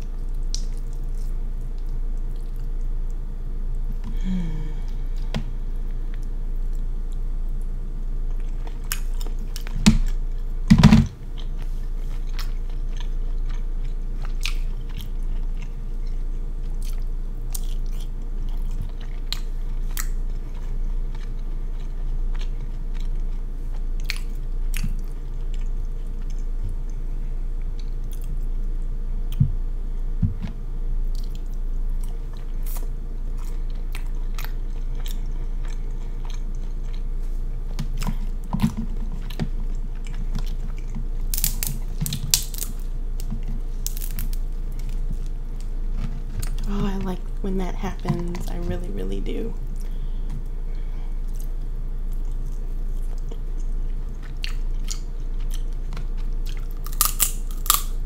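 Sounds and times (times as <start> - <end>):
faint steady hum: 0.0 - 58.0
wet chewing and mouth smacking: 0.3 - 3.2, 11.4 - 27.0, 31.1 - 37.1, 51.2 - 58.0.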